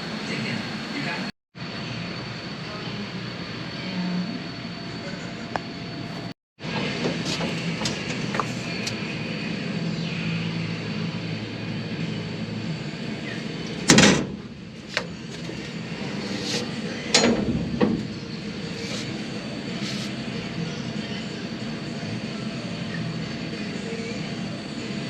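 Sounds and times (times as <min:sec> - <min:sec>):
mechanical hum: 0:00.0 - 0:25.0
door-like bangs: 0:13.9 - 0:14.5, 0:17.2 - 0:18.2.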